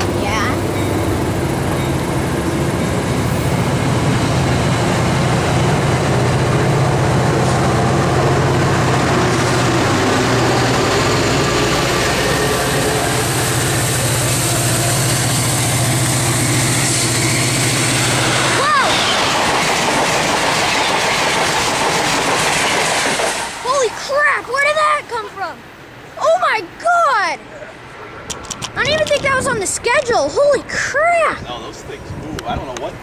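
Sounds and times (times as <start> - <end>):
train engine running: 0.0 - 26.8.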